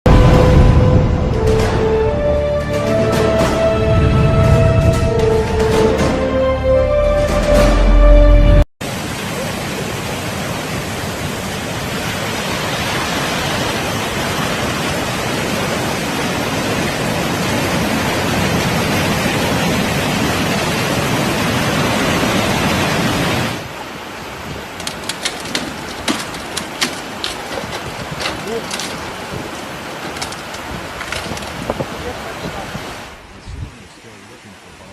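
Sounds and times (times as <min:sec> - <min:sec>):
heavy rain pouring: 0:08.9 - 0:33.2.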